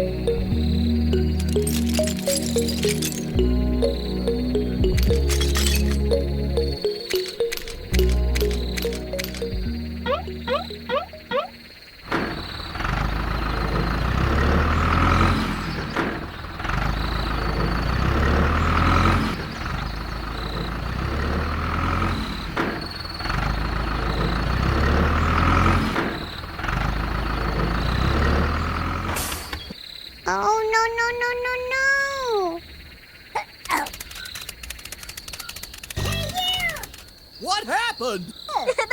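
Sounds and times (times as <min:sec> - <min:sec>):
heavy vehicle engine: 0:00.0 - 0:29.6.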